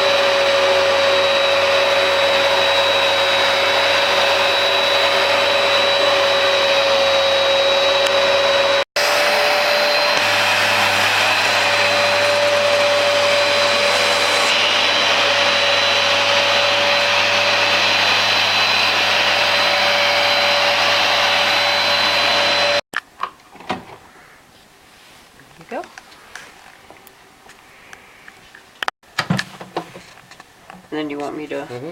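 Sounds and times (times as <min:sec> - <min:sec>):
carpet cleaner motor whining: 0:00.0 - 0:22.8.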